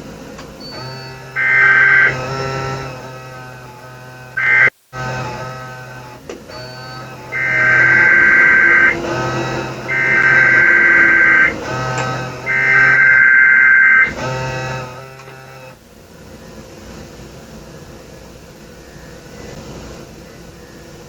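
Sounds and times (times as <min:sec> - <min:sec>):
low electrical buzz: 0:00.0 - 0:21.0
warbling two-tone data bursts: 0:01.4 - 0:02.2, 0:04.4 - 0:04.8, 0:06.8 - 0:11.6, 0:12.4 - 0:14.2.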